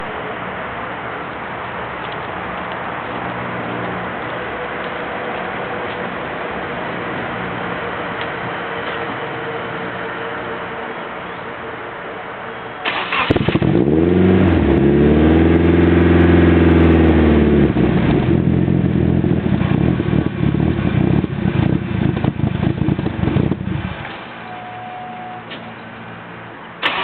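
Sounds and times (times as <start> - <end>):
car engine starting and idling rough: 12.8 - 24.1, 26.8 - 27.0.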